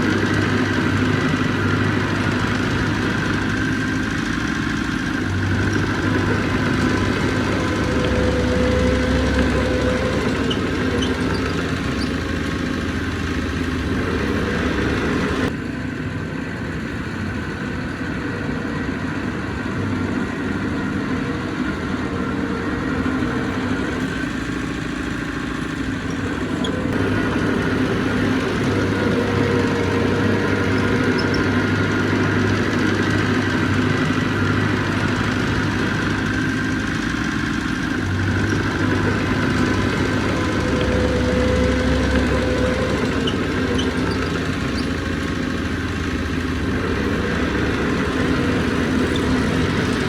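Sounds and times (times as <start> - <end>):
heavy machinery diesel engine: 0.0 - 50.0.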